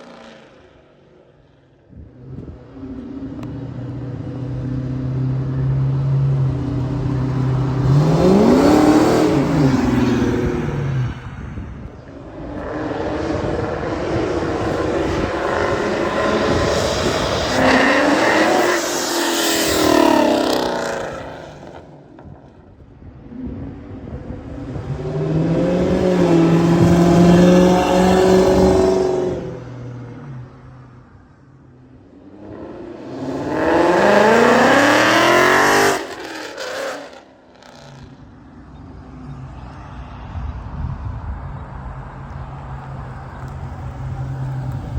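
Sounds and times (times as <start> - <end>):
car exhaust revving: 4.7 - 22.0, 32.1 - 38.2.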